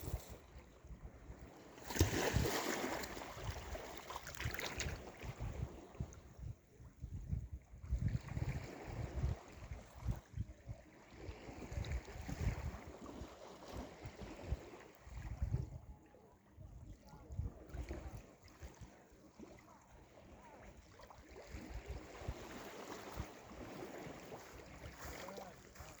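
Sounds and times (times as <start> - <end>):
wind buffeting microphone: 0.0 - 13.2, 13.9 - 15.9.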